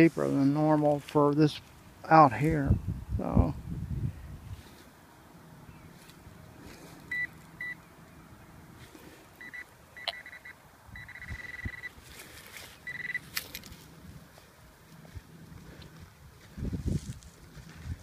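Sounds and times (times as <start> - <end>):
metal detector beeps: 7.1 - 7.8, 9.4 - 12.0, 12.8 - 13.3.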